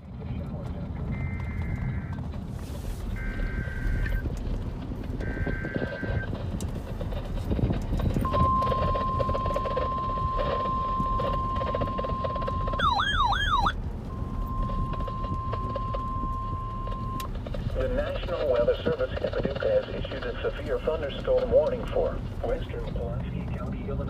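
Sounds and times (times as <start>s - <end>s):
warbling siren-like sweep: 8.3s - 13.8s.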